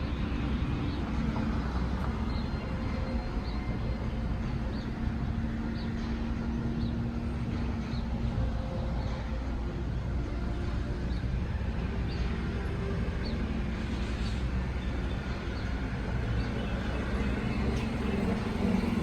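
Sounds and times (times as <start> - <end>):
road traffic rumble: 0.0 - 19.0.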